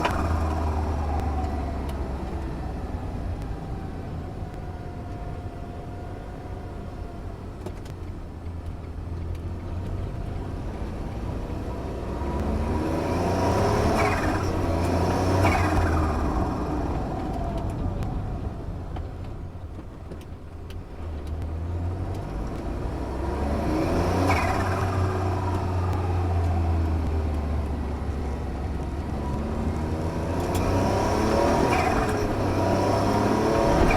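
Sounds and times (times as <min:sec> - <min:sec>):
turbocharged engine revving: 0:00.0 - 0:03.9, 0:09.8 - 0:18.3, 0:21.4 - 0:33.9.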